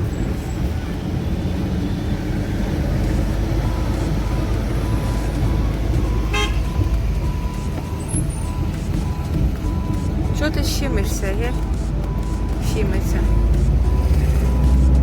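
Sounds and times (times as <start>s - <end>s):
car road rumble from inside: 0.0s - 15.0s
short car horn toot: 6.3s - 6.7s.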